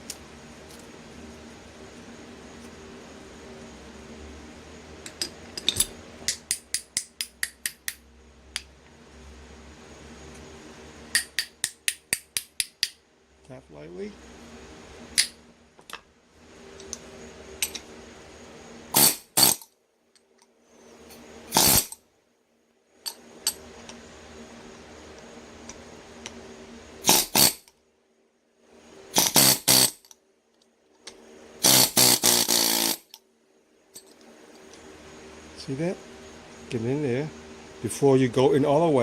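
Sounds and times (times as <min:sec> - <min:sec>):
faint steady hum: 0:00.0 - 0:39.0.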